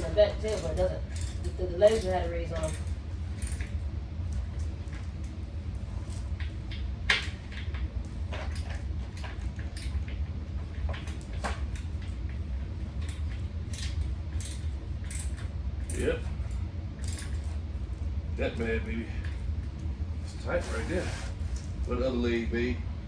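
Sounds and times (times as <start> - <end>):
metallic clinks of hardware and tools: 0.0 - 3.7, 13.1 - 17.6
steady low hum: 0.0 - 23.0.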